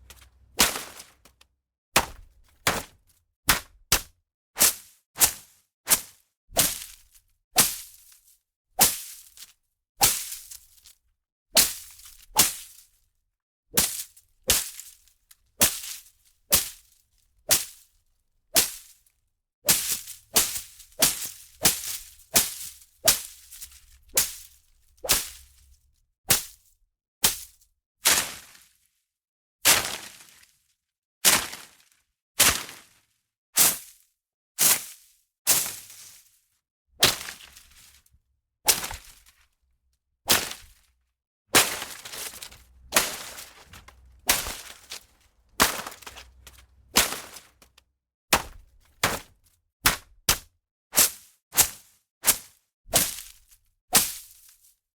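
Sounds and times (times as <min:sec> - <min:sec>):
foliage being whipped: 0:19.7 - 0:25.4, 0:40.3 - 0:40.8, 0:41.6 - 0:47.6
leaves rustling: 0:41.6 - 0:47.6.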